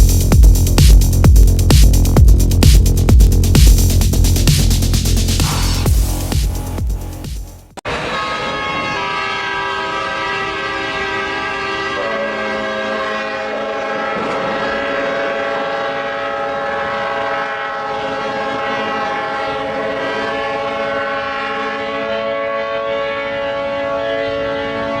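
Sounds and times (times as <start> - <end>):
ship horns blast: 7.9 - 25.0.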